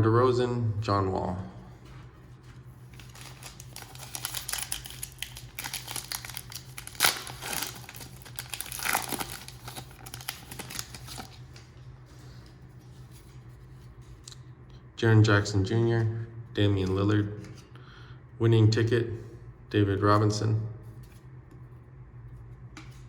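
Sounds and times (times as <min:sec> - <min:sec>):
foil wrapper crinkling and tearing: 0:02.9 - 0:11.6.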